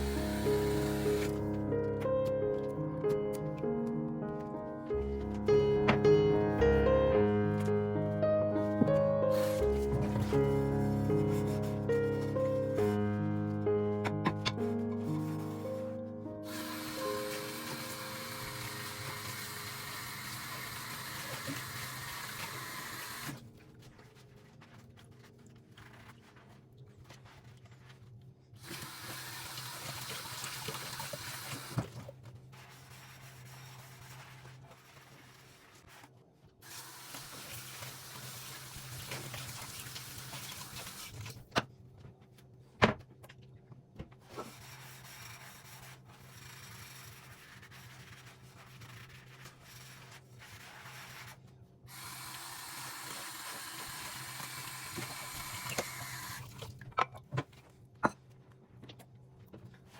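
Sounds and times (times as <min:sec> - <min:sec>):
water running from kitchen tap: 0:00.0 - 0:01.5, 0:16.5 - 0:23.4, 0:28.6 - 0:31.9, 0:36.6 - 0:41.4, 0:51.9 - 0:56.8.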